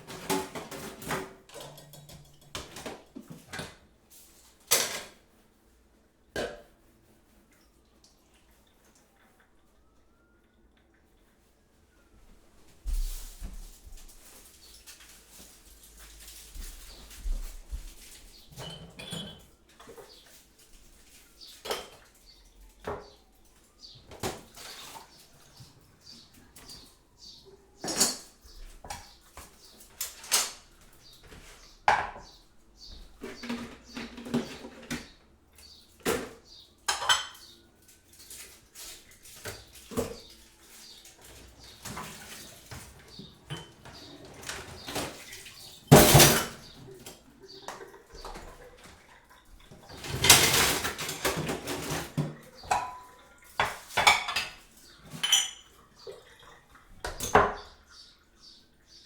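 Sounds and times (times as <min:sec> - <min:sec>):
crockery and cutlery clinking: 0:00.0 - 0:03.7, 0:18.4 - 0:20.3, 0:27.8 - 0:29.2, 0:36.0 - 0:40.4, 0:41.2 - 0:47.0, 0:49.9 - 0:55.8, 0:57.0 - 0:57.8.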